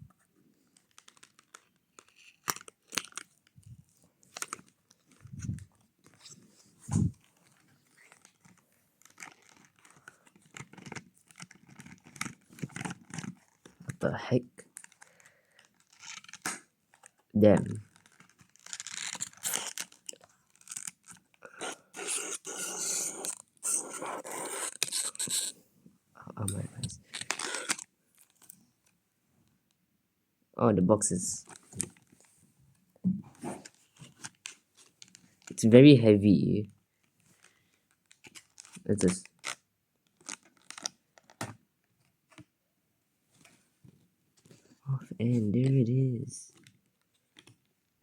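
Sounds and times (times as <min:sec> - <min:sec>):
packaging crinkling and tearing: 0:00.7 - 0:14.0, 0:14.6 - 0:25.6, 0:26.5 - 0:28.6, 0:37.3 - 0:41.4.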